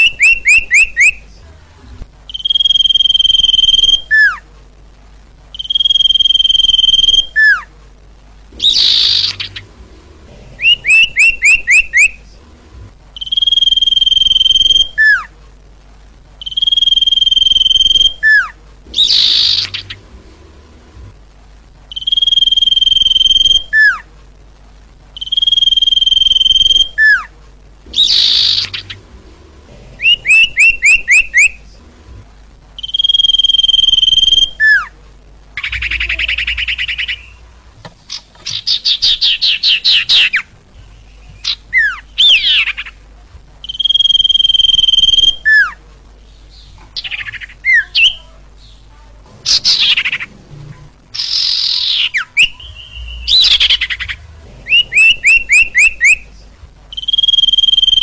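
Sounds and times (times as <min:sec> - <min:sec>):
bird song whistles and buzz: 0:00.0 - 0:01.3, 0:02.3 - 0:04.4, 0:05.5 - 0:07.7, 0:08.6 - 0:09.7, 0:10.6 - 0:12.2, 0:13.2 - 0:15.3, 0:16.4 - 0:20.0, 0:21.9 - 0:24.1, 0:25.2 - 0:27.3, 0:27.9 - 0:29.0, 0:30.0 - 0:31.6, 0:32.8 - 0:34.9, 0:35.6 - 0:37.4, 0:38.1 - 0:43.0, 0:43.6 - 0:45.8, 0:46.4 - 0:48.8, 0:49.4 - 0:50.3, 0:51.2 - 0:56.3, 0:56.9 - 0:58.0.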